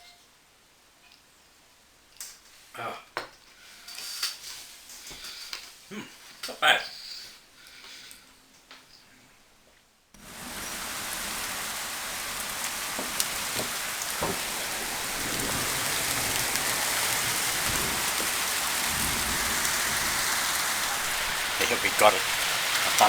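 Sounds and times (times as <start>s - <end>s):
heavy rain pouring: 10.2s - 23.0s
loud raindrops: 10.2s - 23.0s.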